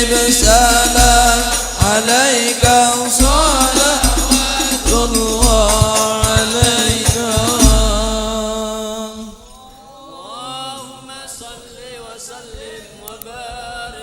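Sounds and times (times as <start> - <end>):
frame drums: 0.0 - 8.8
men singing together: 0.0 - 14.0.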